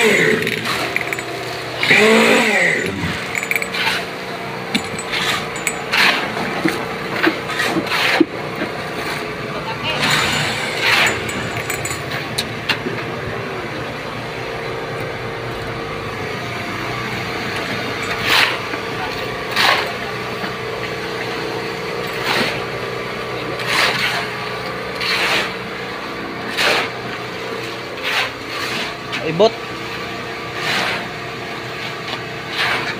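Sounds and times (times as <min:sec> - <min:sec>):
small engine running: 0:00.0 - 0:32.9.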